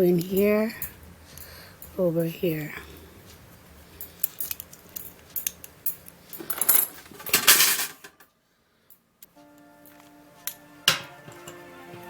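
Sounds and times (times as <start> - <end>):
soft background music: 0.0 - 4.2, 9.3 - 12.0
small metal parts clinking: 4.0 - 8.2.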